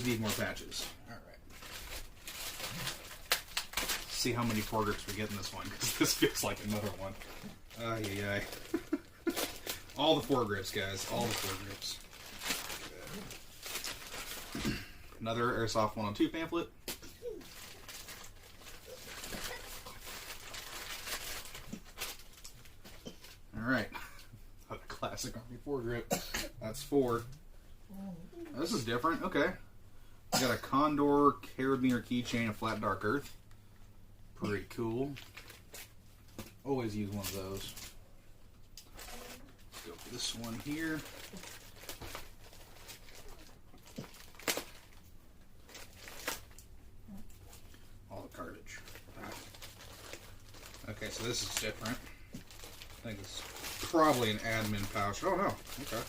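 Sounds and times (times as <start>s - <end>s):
plastic bag crinkling: 0.0s - 14.6s, 15.6s - 23.4s, 35.0s - 36.3s, 38.6s - 46.8s, 47.4s - 56.0s.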